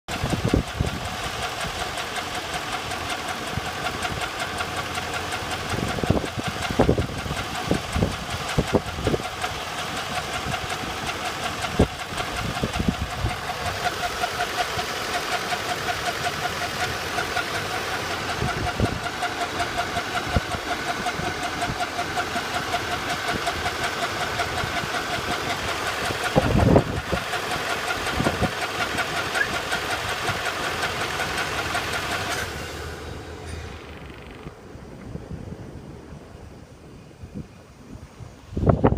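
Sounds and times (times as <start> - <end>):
car engine running: 0.0 - 36.4
engine knocks: 0.1 - 35.2.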